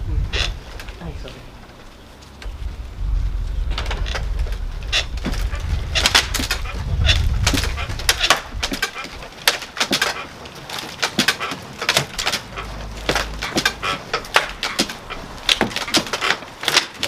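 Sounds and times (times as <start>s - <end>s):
low rumble: 0.0s - 9.3s
wooden frame knocked and pried apart: 5.2s - 17.0s.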